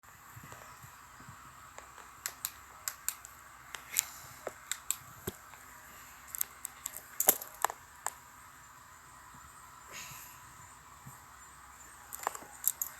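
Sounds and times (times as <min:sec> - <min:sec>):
faint steady hiss: 0:00.0 - 0:12.9
sharp clicks and crackles: 0:01.8 - 0:05.6, 0:06.3 - 0:08.2, 0:12.1 - 0:12.9.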